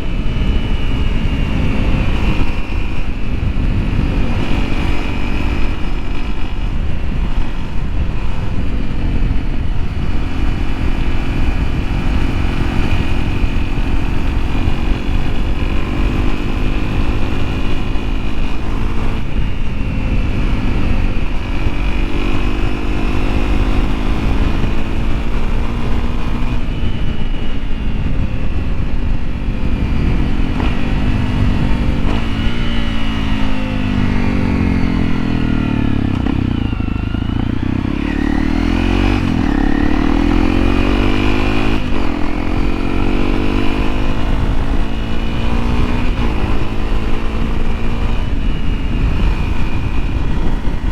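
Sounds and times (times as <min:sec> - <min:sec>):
motorcycle engine revving: 0:00.0 - 0:50.9
heavy low rumble: 0:23.8 - 0:43.6.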